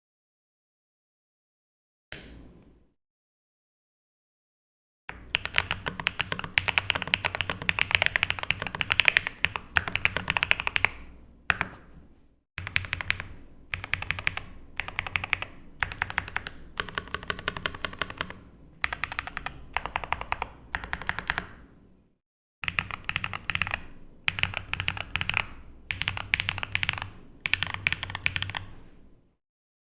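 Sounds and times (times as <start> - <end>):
mechanical keyboard typing: 5.2 - 11.8, 12.6 - 21.6, 22.6 - 28.7.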